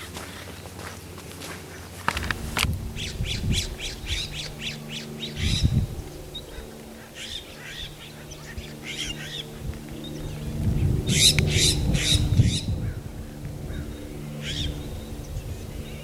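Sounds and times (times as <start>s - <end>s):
bird harsh scratchy calls: 2.1s - 14.8s.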